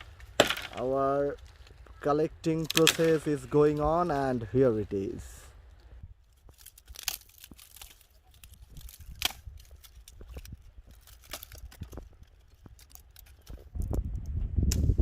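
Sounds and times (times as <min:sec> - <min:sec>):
dry twigs and leaves crackling: 0:00.0 - 0:15.0.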